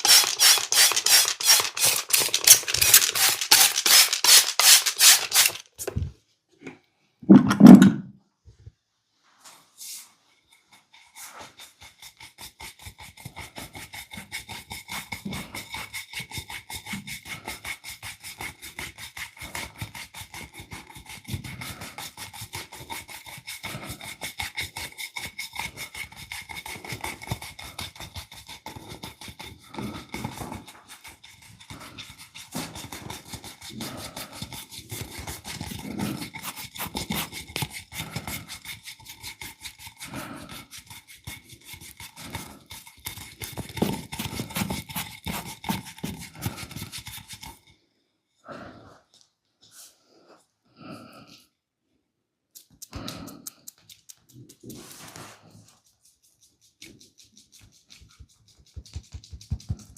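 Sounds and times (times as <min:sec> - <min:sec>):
hands rubbing and slapping skin: 0:52.6 - 0:59.9.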